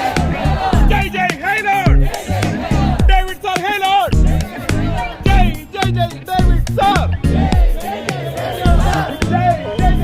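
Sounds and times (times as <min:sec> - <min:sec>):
dance music with heavy bass: 0:00.0 - 0:10.0.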